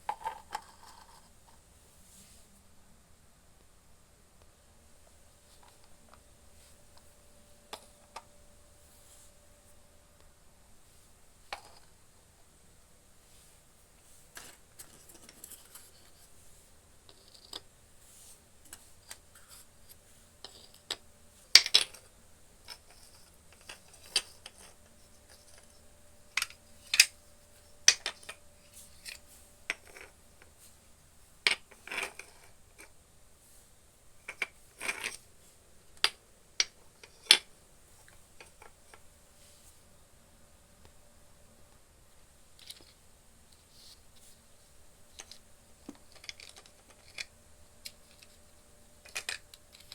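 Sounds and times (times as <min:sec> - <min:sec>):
toy pieces clicking and clacking: 0:20.4 - 0:27.1, 0:27.8 - 0:30.2, 0:31.5 - 0:32.5, 0:34.2 - 0:35.2, 0:36.0 - 0:39.0, 0:45.2 - 0:48.4, 0:49.0 - 0:49.9.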